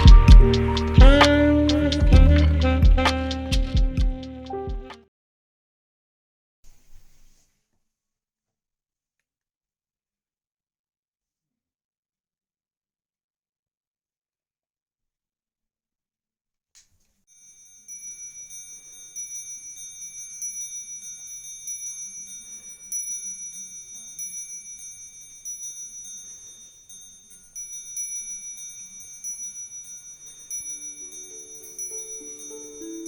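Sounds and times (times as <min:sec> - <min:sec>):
high ringing bell-like chimes: 0:17.3 - 0:33.0.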